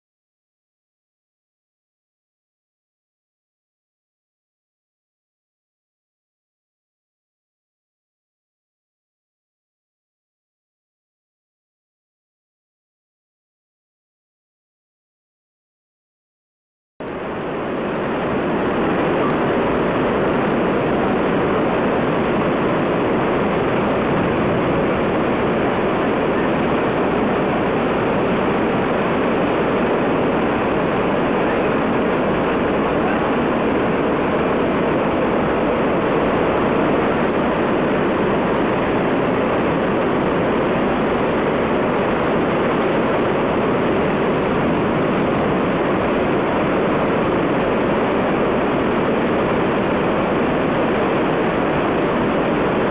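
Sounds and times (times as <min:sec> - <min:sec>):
river torrent rushing: 0:17.0 - 0:52.9.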